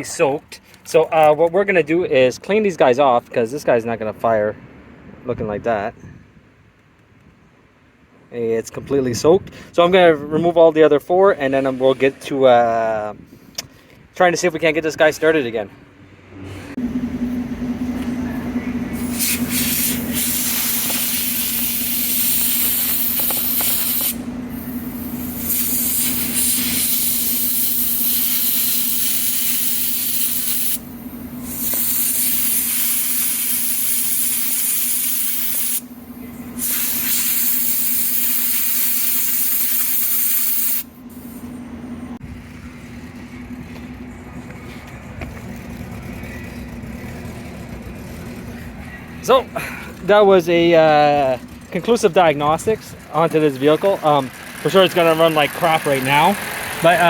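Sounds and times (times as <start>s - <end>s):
steady low hum: 16.7s - 56.9s
long hissing air blasts: 18.9s - 41.4s.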